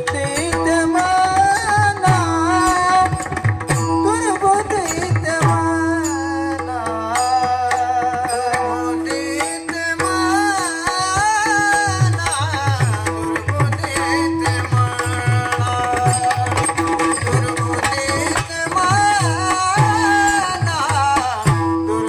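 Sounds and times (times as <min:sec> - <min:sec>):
man singing ornamented melody: 0:00.0 - 0:22.0.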